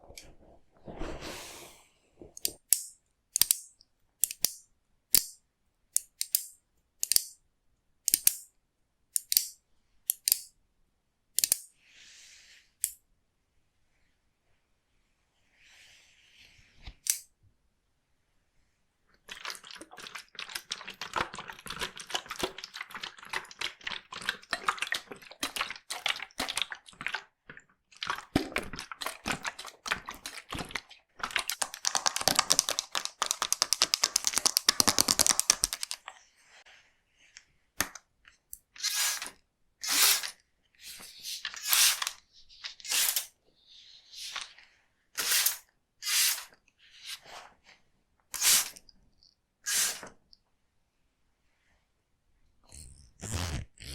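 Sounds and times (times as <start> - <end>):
scissors snipping hair: 11.4 - 11.7.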